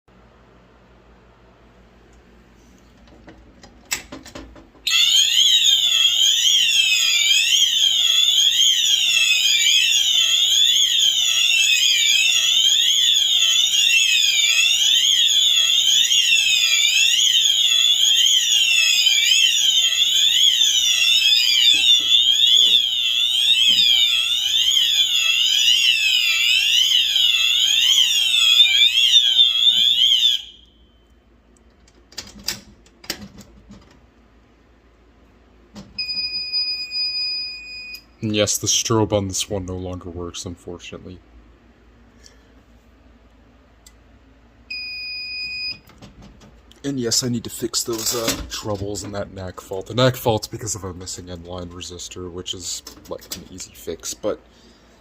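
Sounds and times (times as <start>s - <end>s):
fire alarm sweeping tone: 4.8s - 31.3s, 36.0s - 38.9s, 44.7s - 45.9s.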